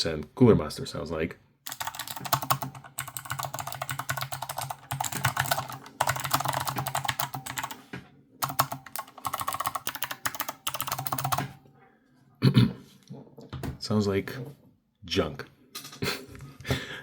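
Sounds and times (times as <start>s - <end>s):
fast typing on clicky keyboard: 1.7s - 11.6s.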